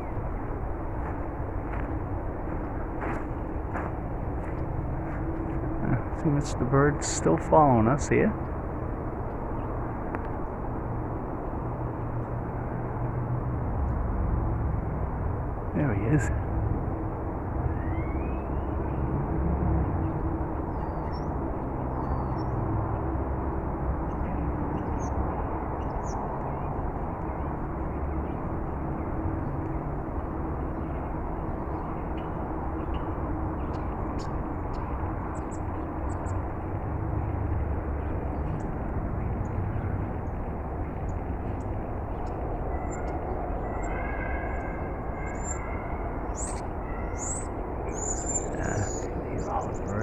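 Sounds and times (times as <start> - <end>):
low hum: 0.0 - 50.0
low outdoor rumble: 0.0 - 50.0
faint high bird chirps: 17.7 - 19.0, 41.1 - 50.0.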